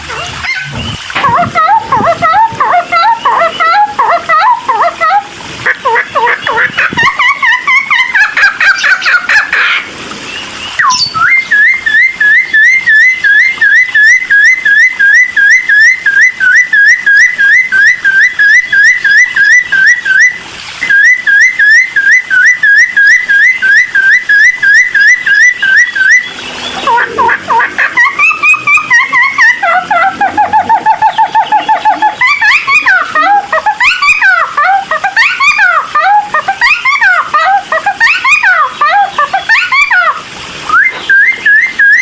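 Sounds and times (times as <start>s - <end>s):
bird singing whistled notes: 0.5s - 1.0s, 10.3s - 26.9s, 40.7s - 42.0s.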